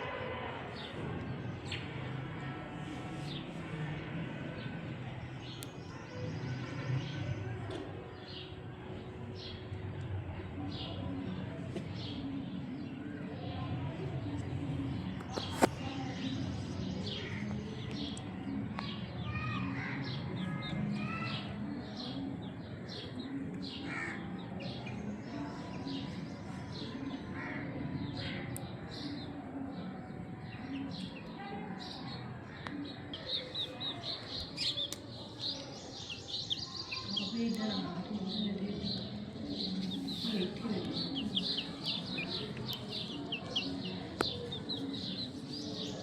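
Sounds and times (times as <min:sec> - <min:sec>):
low background murmur: 0:00.0 - 0:46.0
small birds chirping: 0:14.4 - 0:46.0.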